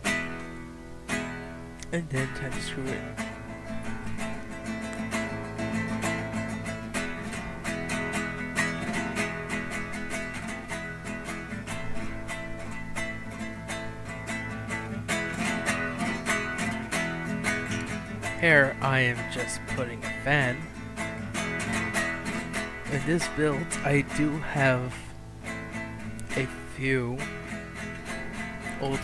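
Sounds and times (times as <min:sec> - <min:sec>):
plucked and strummed guitar music: 0:00.0 - 0:29.0.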